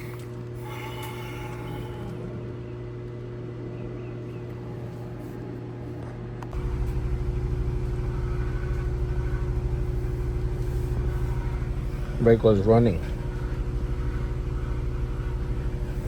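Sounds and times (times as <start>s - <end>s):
steady hum: 0.0s - 16.0s
van engine starting and idling: 6.5s - 16.0s.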